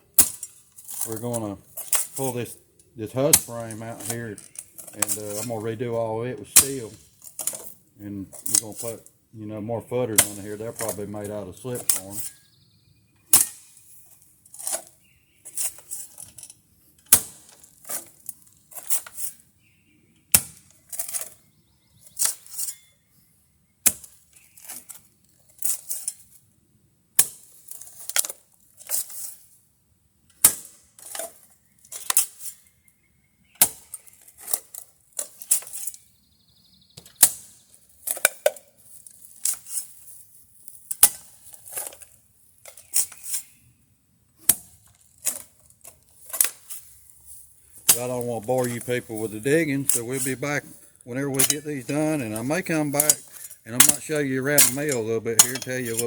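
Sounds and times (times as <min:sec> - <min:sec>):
metal digging tool striking ground: 0:00.0 - 0:12.4, 0:13.2 - 0:19.4, 0:20.3 - 0:21.4, 0:23.9 - 0:24.9, 0:27.2 - 0:28.3, 0:30.3 - 0:32.7, 0:33.6 - 0:36.1, 0:37.0 - 0:40.0, 0:40.6 - 0:43.6, 0:44.4 - 0:56.0
soil crunching and scraping: 0:00.0 - 0:23.3, 0:23.9 - 0:26.4, 0:27.2 - 0:29.6, 0:30.3 - 0:56.0.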